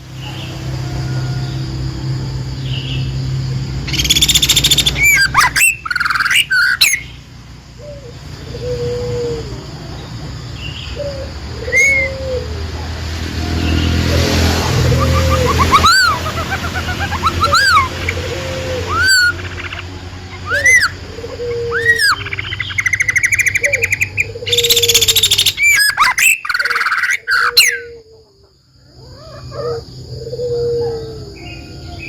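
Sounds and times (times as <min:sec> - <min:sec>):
songbird chirping: 0:00.0 - 0:32.0
soft whistled bird notes: 0:20.4 - 0:21.0.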